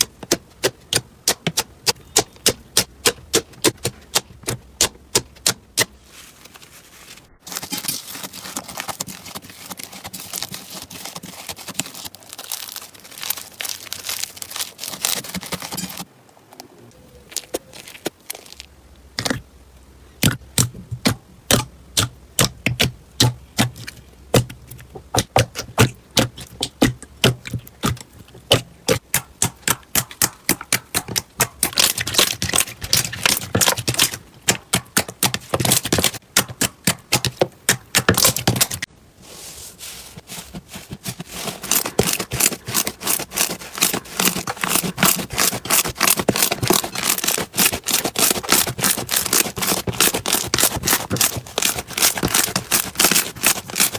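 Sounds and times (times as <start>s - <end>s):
slime crackling when squeezed: 7.4s - 16.0s.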